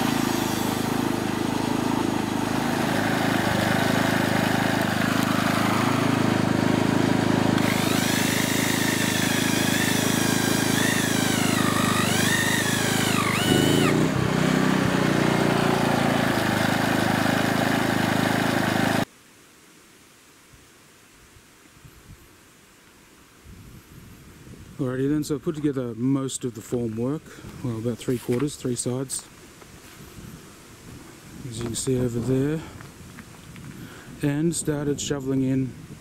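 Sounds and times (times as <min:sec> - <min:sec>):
motor-driven machine whining: 0:00.0 - 0:14.1.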